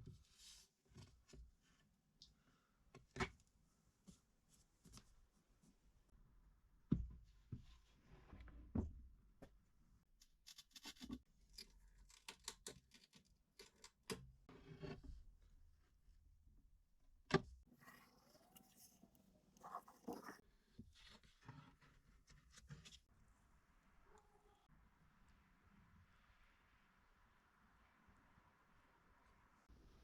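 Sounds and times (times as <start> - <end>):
scraping and rustling: 17.7 - 20.4.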